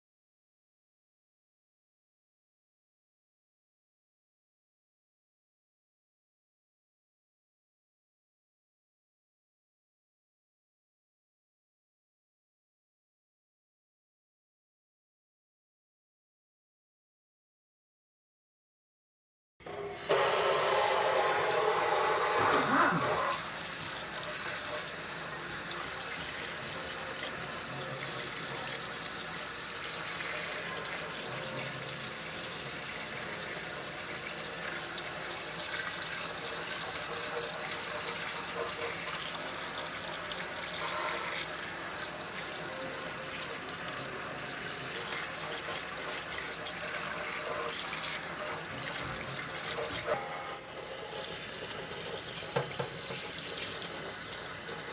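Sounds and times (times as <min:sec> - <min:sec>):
tap water running into sink: 0:20.0 - 0:54.9.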